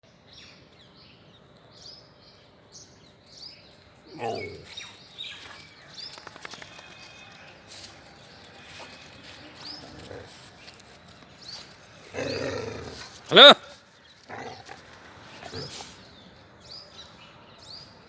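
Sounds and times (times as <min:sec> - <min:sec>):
louder lower call or voice: 0:13.3 - 0:13.7.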